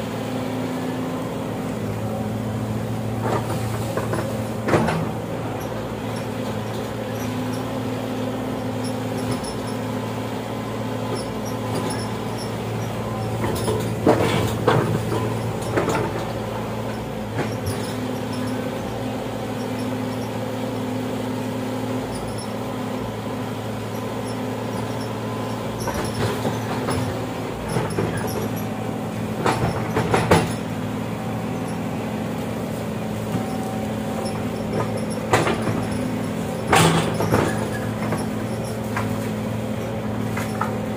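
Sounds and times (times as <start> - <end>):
diesel engine running: 0.0 - 40.9
metallic clanks and knocks: 34.7 - 39.2.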